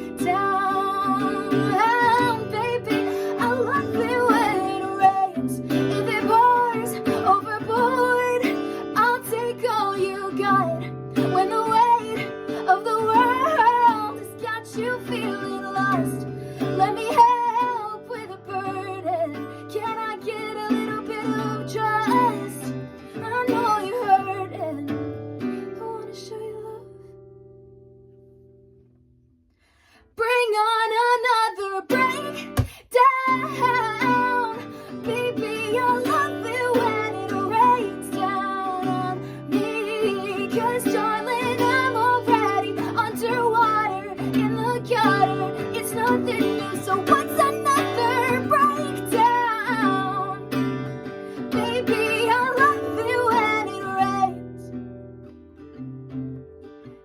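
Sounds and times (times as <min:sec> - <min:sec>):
person singing wordless melody: 0:00.0 - 0:22.6
strummed guitar chords: 0:00.0 - 0:23.9, 0:31.9 - 0:57.0.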